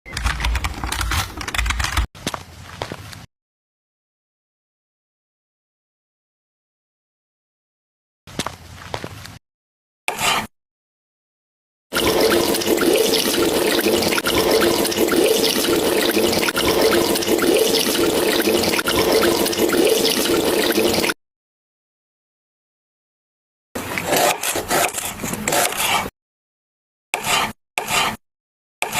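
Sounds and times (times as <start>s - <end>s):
running water splashing: 11.9s - 21.2s.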